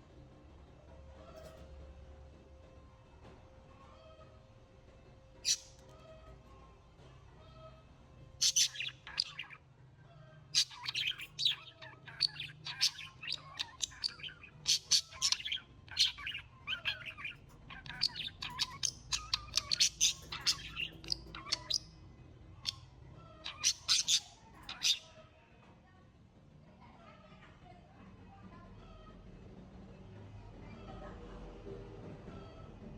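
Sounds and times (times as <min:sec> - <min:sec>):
faint low hum: 0:00.0 - 0:32.9
birds chirping: 0:05.4 - 0:05.8, 0:08.4 - 0:09.6, 0:10.5 - 0:25.2.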